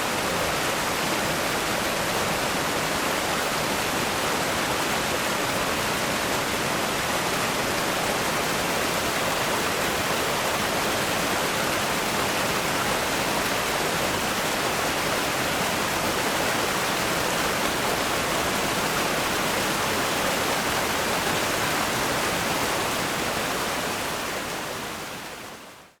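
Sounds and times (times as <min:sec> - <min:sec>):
river rapids rushing: 0:00.0 - 0:25.8.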